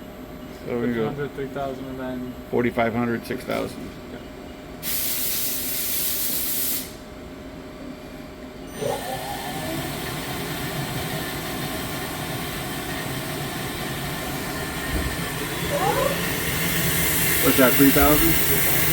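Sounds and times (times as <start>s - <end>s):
hiss: 4.8s - 7.0s
lathe spindle whine: 9.0s - 18.9s.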